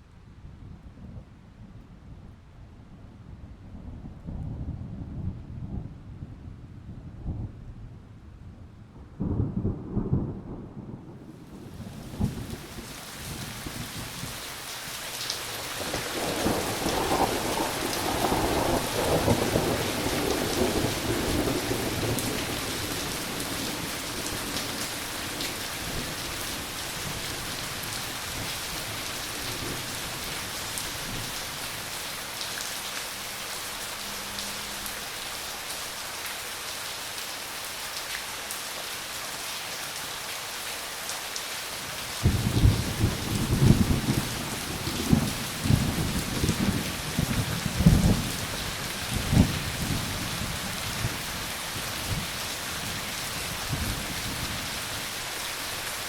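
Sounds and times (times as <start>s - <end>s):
thunder rumbling: 9.0s - 14.4s, 15.8s - 35.9s, 42.2s - 52.4s
steady rain falling: 9.0s - 56.0s.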